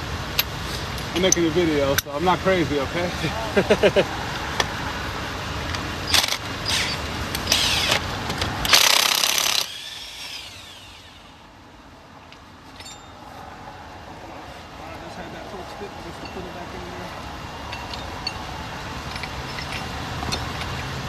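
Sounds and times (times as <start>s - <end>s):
impact wrench bursts: 6.0s - 11.5s.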